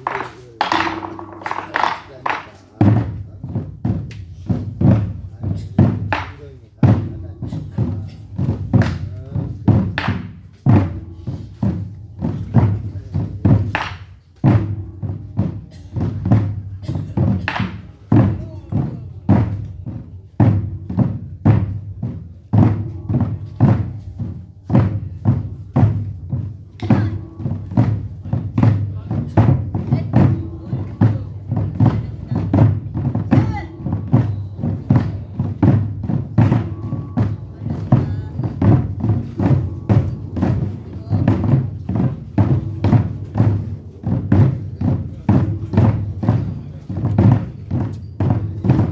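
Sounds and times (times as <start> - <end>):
large barrel drums struck: 0.0 - 48.9.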